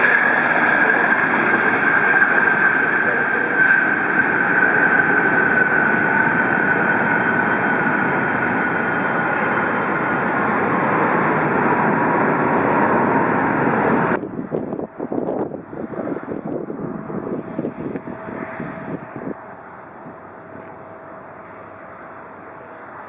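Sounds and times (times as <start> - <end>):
high jet engine whine: 0.0 - 23.0
jet engines roaring: 0.0 - 23.0.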